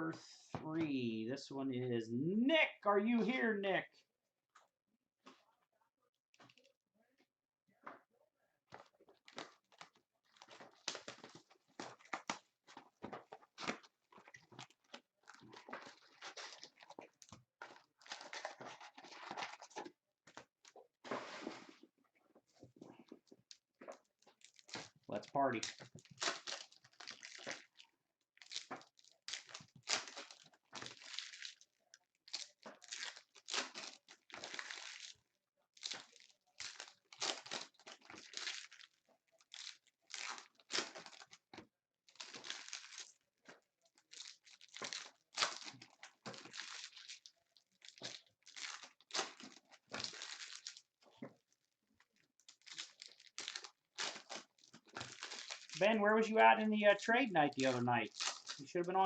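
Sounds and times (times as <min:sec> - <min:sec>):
foil wrappers crinkling: 0:24.3 - 0:41.5, 0:42.1 - 0:59.0.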